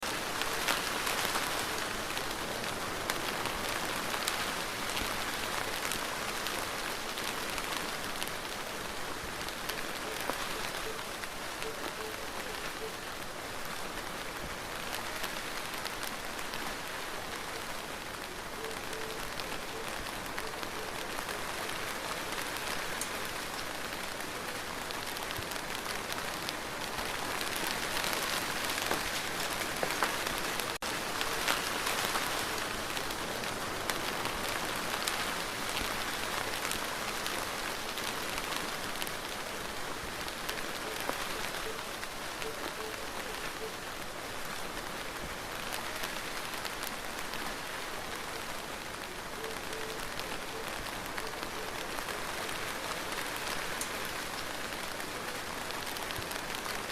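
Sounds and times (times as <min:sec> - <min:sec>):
steady rain falling: 0:00.0 - 0:56.9.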